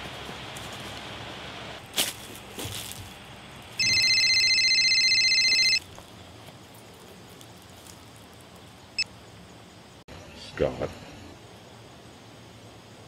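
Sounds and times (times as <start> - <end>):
phone trilling ringtone: 3.8 - 5.8.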